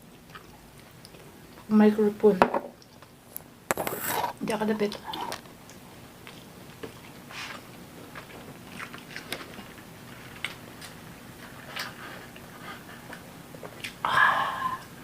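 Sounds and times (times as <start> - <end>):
chewing clicks and smacks: 0.1 - 1.7, 4.9 - 7.2.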